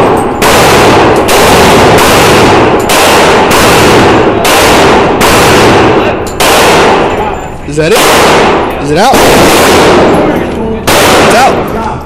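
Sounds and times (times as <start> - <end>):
rifle shots: 0.0 - 11.8.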